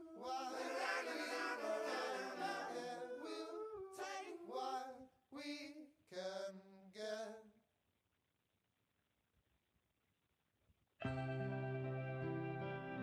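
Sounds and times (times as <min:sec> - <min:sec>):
unaccompanied voices singing: 0:00.0 - 0:06.6.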